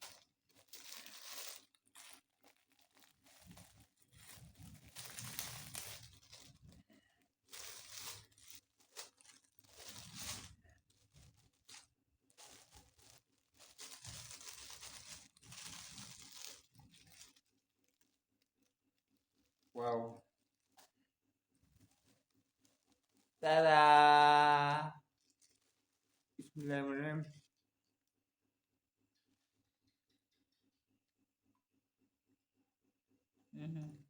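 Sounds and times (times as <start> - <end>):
food wrapper crinkling and tearing: 0.0 - 19.7, 25.2 - 26.3.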